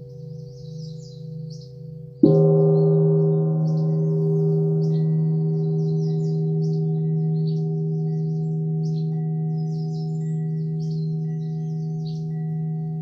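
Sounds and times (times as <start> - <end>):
gong ringing: 2.2 - 12.2.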